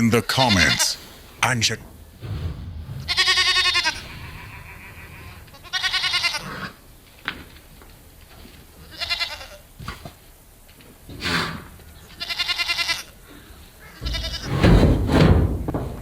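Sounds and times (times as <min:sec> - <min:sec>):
goats bleating: 0:00.2 - 0:07.5, 0:08.3 - 0:10.0, 0:11.5 - 0:14.9
faint knocks: 0:01.0 - 0:09.1, 0:13.3 - 0:16.0.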